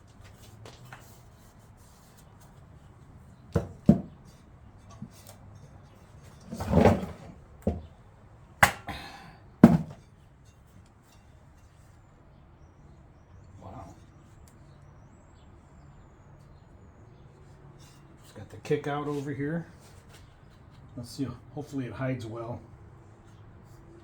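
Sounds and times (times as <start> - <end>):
metal step knocks and clunks: 3.5 - 4.3, 6.4 - 7.9, 8.6 - 10.0
scraping: 3.6 - 7.9.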